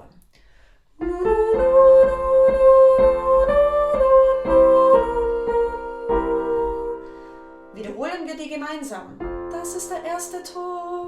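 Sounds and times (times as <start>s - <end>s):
woman singing: 1.0s - 7.2s, 9.5s - 11.0s
piano chords: 1.0s - 11.0s.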